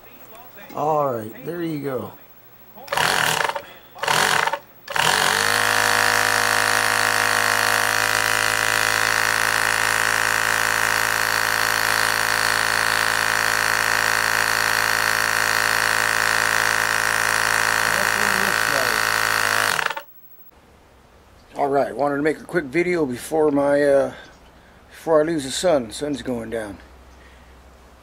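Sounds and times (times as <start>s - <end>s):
air compressor humming: 2.8s - 20.2s.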